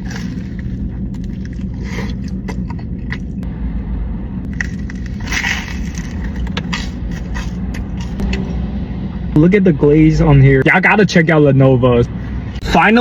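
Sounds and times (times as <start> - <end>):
food packaging crackling: 0.0 - 3.4, 4.5 - 8.2
car humming: 0.0 - 13.0.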